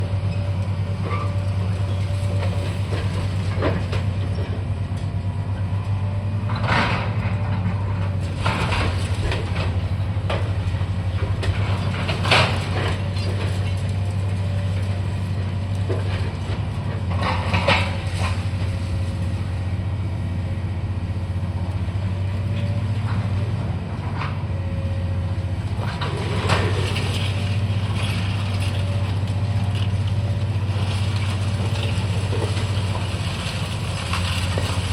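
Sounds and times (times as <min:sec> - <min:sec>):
heavy machinery diesel hum: 0:00.0 - 0:34.9
falling debris: 0:25.9 - 0:34.9.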